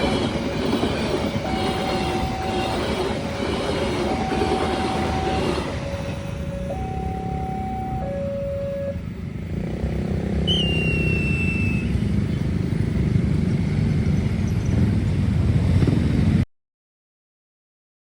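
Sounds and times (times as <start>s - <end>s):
road traffic rumbling: 0.0s - 16.4s.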